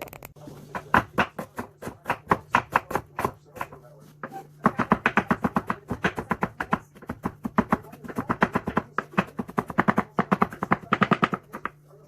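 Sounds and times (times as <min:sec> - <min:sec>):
knife chopping on cutting board: 0:00.5 - 0:11.8.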